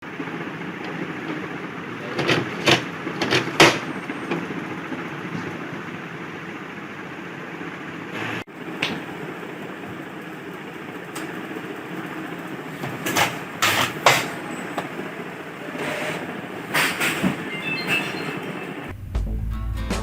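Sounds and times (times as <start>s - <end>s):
printer carriage rattling: 2.0s - 4.5s, 12.0s - 18.5s.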